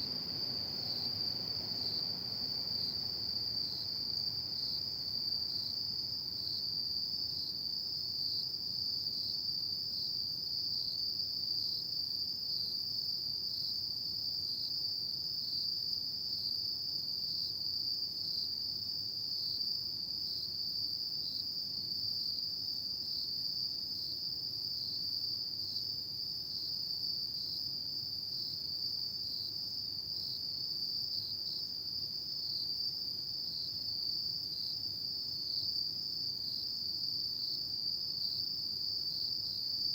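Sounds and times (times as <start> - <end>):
faint background hiss: 0.0 - 9.3.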